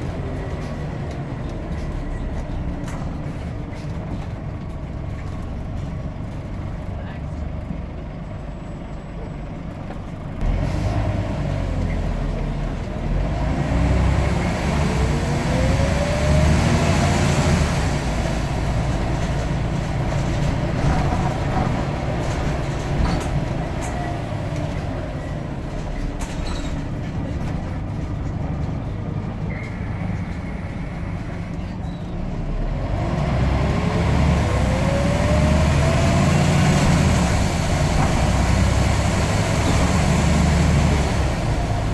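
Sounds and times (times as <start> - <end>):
bus diesel engine pulling hard: 0.0 - 41.9
rising engine whine: 32.8 - 41.9.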